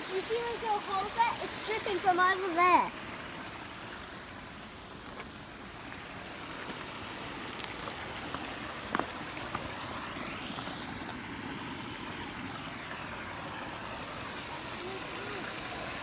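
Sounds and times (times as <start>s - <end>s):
flowing water rushing: 0.0s - 16.0s.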